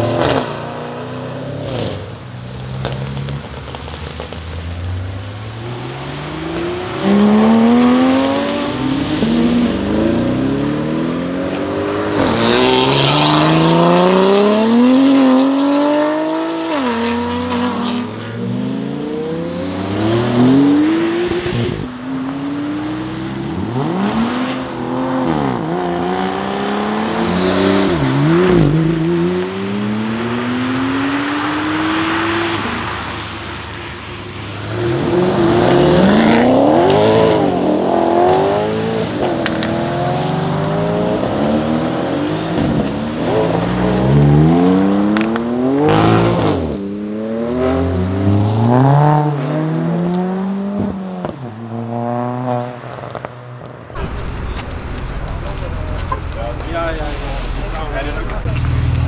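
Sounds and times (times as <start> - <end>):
car engine revving: 0.0 - 46.8, 54.0 - 59.0
exhaust cracks: 1.7 - 10.6, 53.7 - 59.0.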